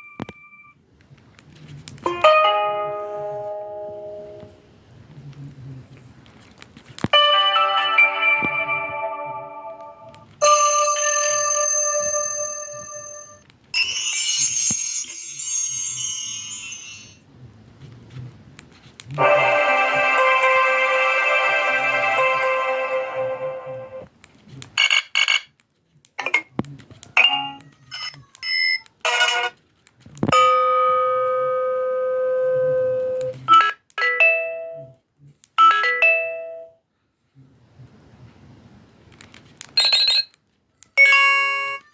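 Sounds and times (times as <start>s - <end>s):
high chime-like ringtone: 2.1s - 4.5s, 7.2s - 17.2s, 19.2s - 24.0s, 41.0s - 41.9s
phone ringtone: 2.1s - 4.6s, 7.1s - 17.2s, 19.2s - 24.0s, 35.6s - 36.8s, 39.8s - 40.4s, 41.0s - 41.9s.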